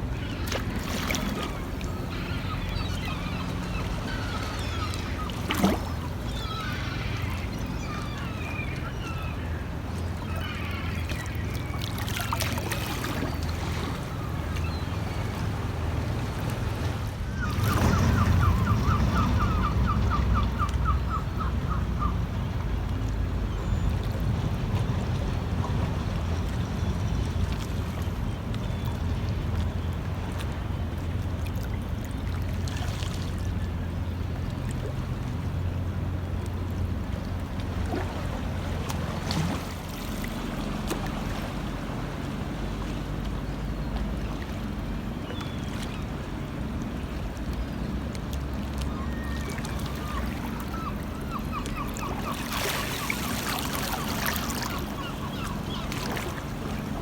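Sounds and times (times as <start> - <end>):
birds chirping: 0.0 - 31.2, 33.3 - 57.0
sea water lapping at shore: 0.0 - 57.0
small splashes and drips: 46.8 - 56.9.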